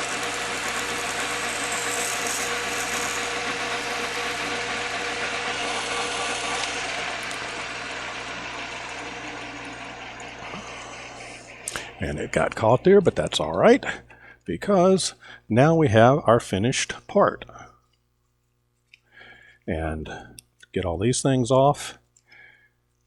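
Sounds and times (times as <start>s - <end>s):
drill bit cutting noise: 0.0s - 13.5s
lathe motor hum: 0.0s - 14.0s.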